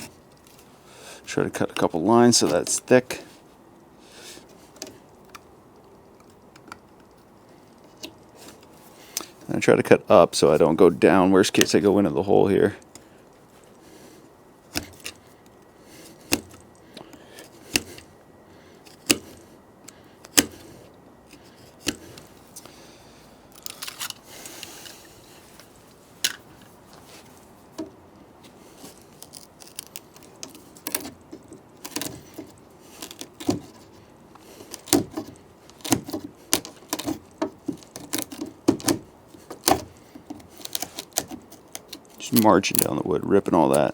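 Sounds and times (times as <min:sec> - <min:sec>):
chisel scraping wood: 0:28.5 - 0:42.2.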